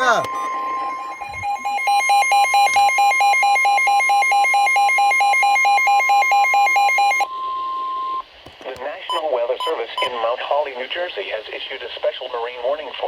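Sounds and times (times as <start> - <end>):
rapid electronic beeping: 0.0 - 4.5
steady alarm tone: 0.0 - 8.2.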